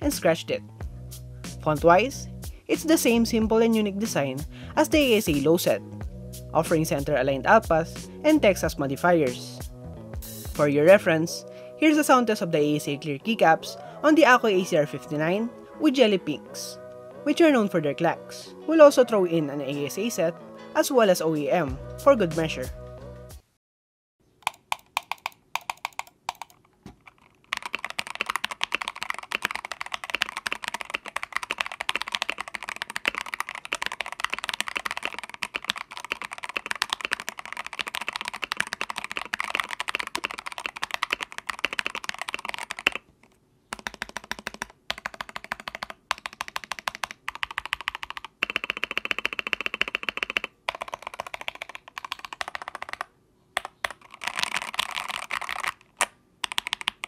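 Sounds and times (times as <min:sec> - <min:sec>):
mechanical keyboard typing: 0:24.4 - 0:57.0.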